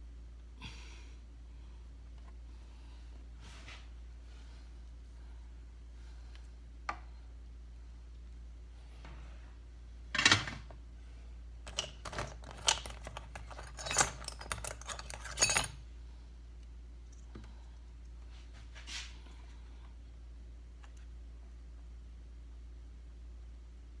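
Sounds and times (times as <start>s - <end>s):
low steady hum: 0.0s - 24.0s
metal tools clinking on a workbench: 11.7s - 15.8s.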